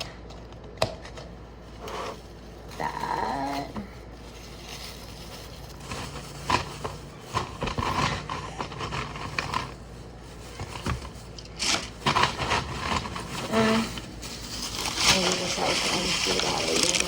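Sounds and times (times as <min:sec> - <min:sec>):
ice and plastic containers clicking: 0:05.7 - 0:09.8, 0:10.6 - 0:17.0.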